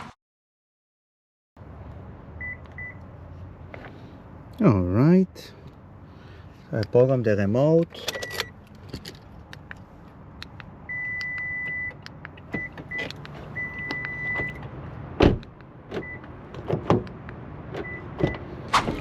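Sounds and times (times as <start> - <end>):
loud thump: 18.7 - 19.0.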